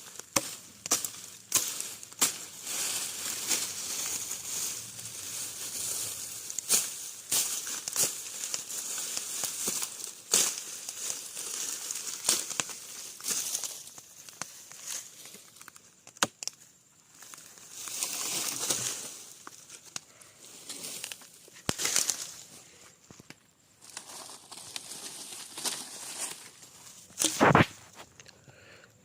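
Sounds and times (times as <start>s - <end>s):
dry brush rustling and crackling: 0.0s - 28.2s
blade slashing undergrowth: 0.2s - 13.8s, 27.2s - 28.0s.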